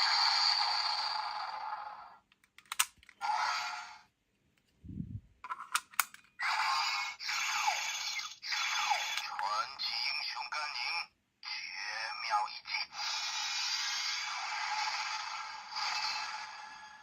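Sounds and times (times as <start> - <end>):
toy speaker sound effects: 6.4 - 16.2.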